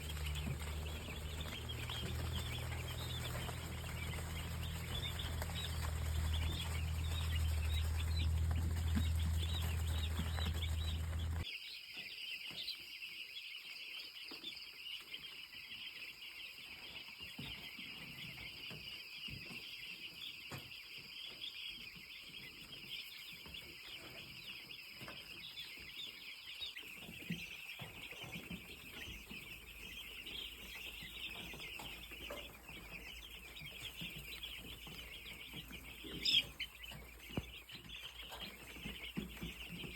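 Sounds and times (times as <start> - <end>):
strong low hum: 0.0 - 11.4
chickens clucking and peeping: 0.0 - 39.9.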